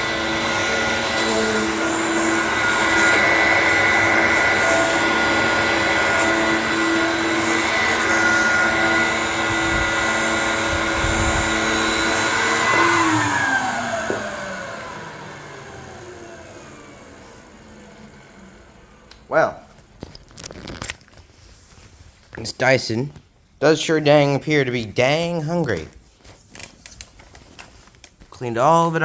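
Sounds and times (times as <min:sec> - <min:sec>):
vacuum cleaner running with whine: 0:00.0 - 0:19.0
vacuum motor winding down: 0:00.0 - 0:19.3.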